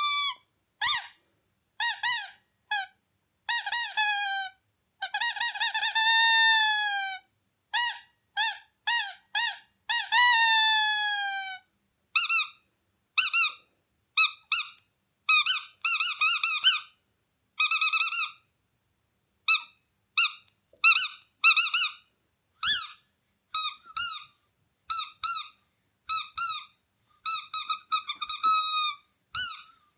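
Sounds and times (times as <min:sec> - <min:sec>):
squeaky dog toy squeaking: 0:00.0 - 0:01.2, 0:01.8 - 0:12.6, 0:13.2 - 0:17.0, 0:17.6 - 0:18.5, 0:19.5 - 0:29.8.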